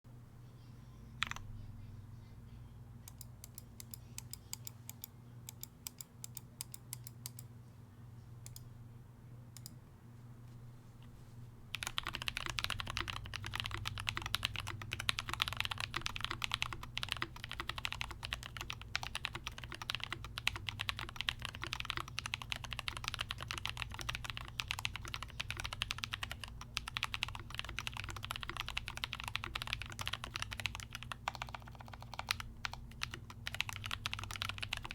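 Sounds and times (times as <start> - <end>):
steady low hum: 0.1 - 34.9
typing on a computer keyboard: 1.2 - 1.4, 11.7 - 34.9.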